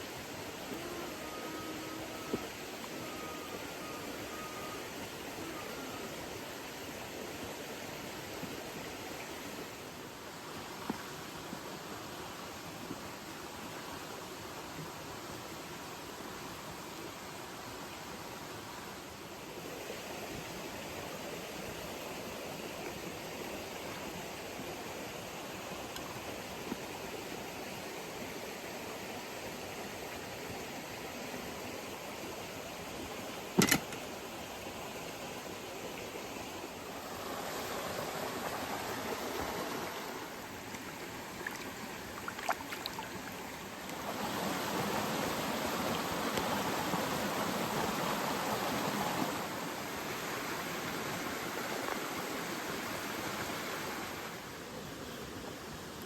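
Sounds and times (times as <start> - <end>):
river rushing: 0.0 - 56.0.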